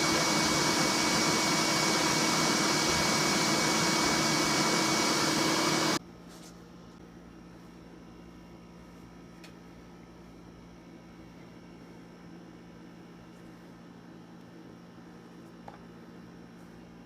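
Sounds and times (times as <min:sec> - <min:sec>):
electric motor whirring: 0:00.0 - 0:06.0.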